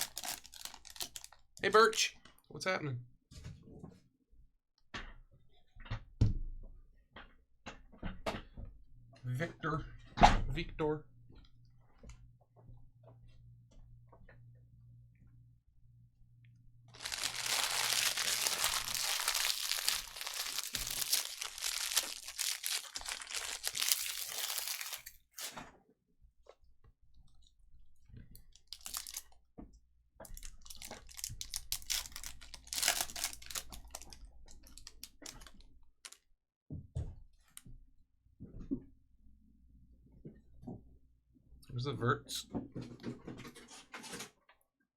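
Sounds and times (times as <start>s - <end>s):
foil wrappers tearing and crinkling: 0.0s - 1.4s, 17.0s - 25.5s, 28.7s - 29.3s, 30.4s - 35.6s.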